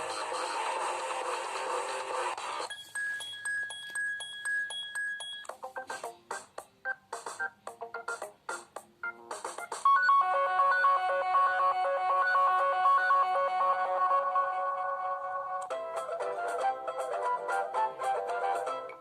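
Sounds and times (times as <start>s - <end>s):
musical phone ringtone: 2.6s - 8.4s, 9.0s - 19.0s
electronic tone with pips: 9.1s - 15.6s.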